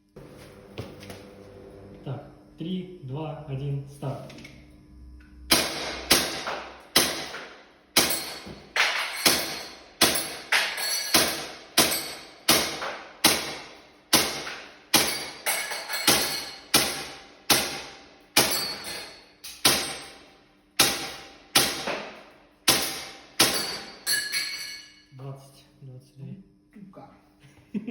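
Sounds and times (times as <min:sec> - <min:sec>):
airsoft pistol shots: 0:05.5 - 0:08.4, 0:11.2 - 0:15.4, 0:16.1 - 0:18.6, 0:20.8 - 0:23.7
metal target ringing: 0:08.0 - 0:12.8, 0:15.0 - 0:17.8, 0:18.4 - 0:20.2, 0:22.7 - 0:25.0.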